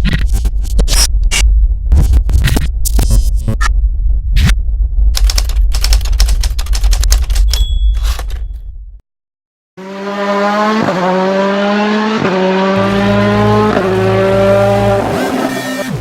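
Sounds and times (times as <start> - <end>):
car engine accelerating at high revs: 9.8 - 16.0.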